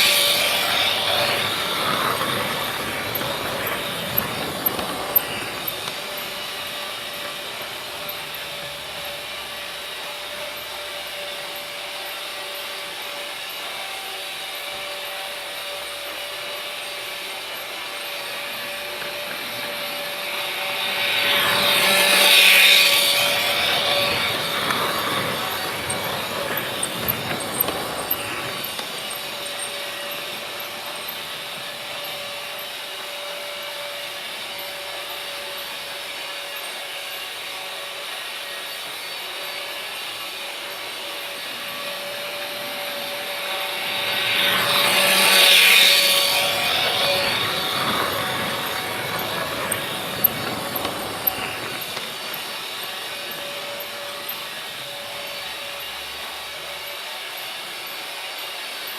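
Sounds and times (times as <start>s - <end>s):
freight train rolling on rails: 0.0s - 58.9s
thin steady whine: 0.0s - 58.9s.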